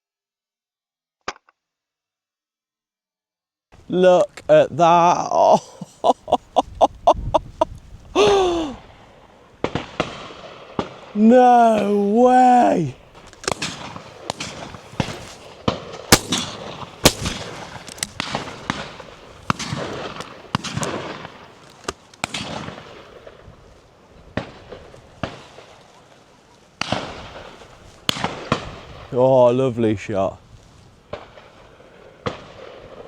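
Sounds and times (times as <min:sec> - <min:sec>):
shotgun shots with echo: 0:13.5 - 0:21.4.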